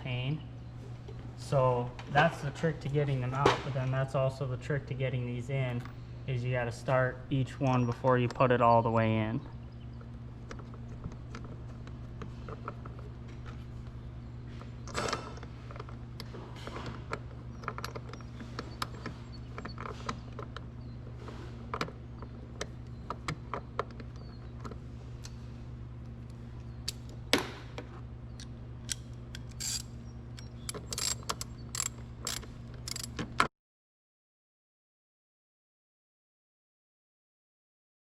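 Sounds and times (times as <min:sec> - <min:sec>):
steady low hum: 0:00.0 - 0:33.5
tools clicking and scraping on metal: 0:28.4 - 0:33.5.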